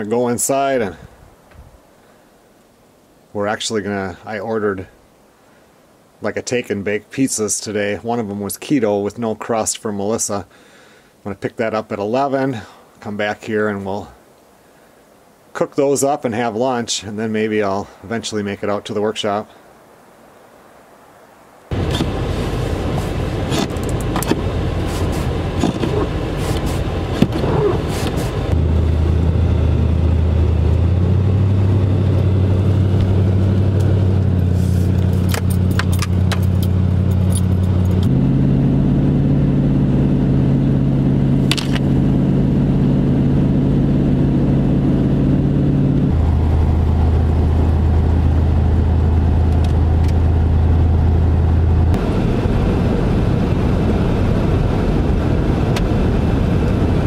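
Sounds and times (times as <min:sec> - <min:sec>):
road noise: 0:19.7 - 0:57.0
vehicle engine drone: 0:21.7 - 0:57.0
sharp clicks and rattles: 0:34.9 - 0:38.1.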